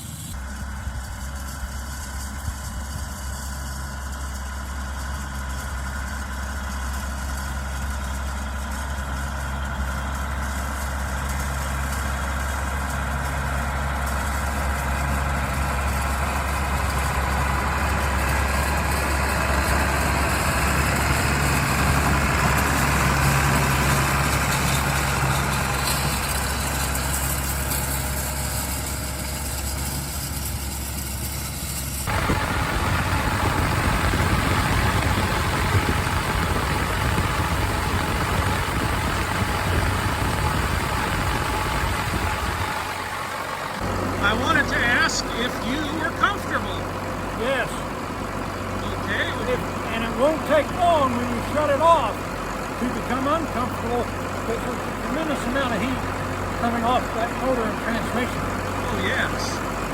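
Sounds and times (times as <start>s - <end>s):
tractor diesel engine running: 0.0s - 59.9s.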